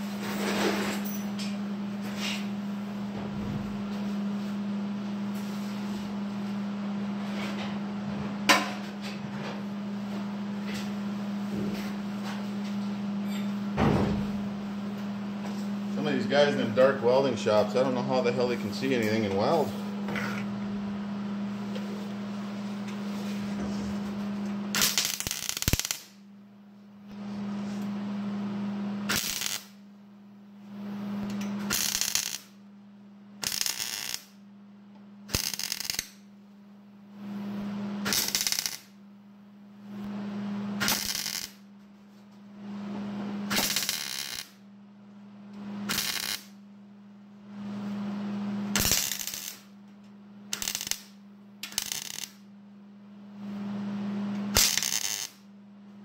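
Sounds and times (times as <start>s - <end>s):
electrical hum: 0.0s - 56.0s
welding crackling bursts: 24.7s - 26.2s, 29.1s - 29.8s, 31.6s - 32.5s, 33.4s - 34.4s, 35.3s - 36.2s, 38.1s - 39.0s, 40.8s - 41.6s, 43.5s - 44.6s, 45.9s - 46.6s, 48.7s - 49.7s, 50.5s - 52.4s, 54.5s - 55.4s.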